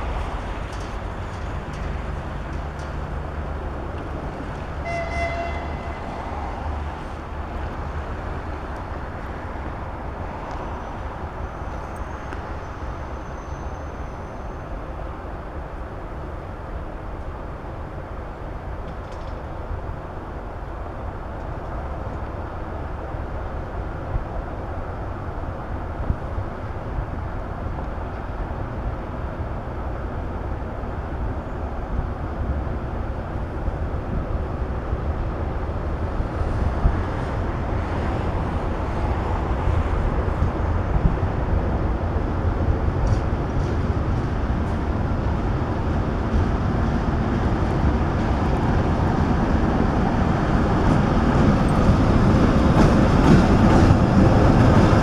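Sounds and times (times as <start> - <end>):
diesel locomotive engine rumbling: 0.0 - 55.0.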